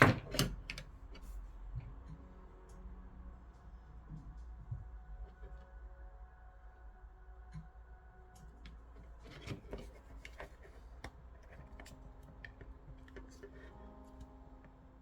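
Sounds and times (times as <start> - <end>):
parts and tools clicking and scraping: 9.0 - 13.8.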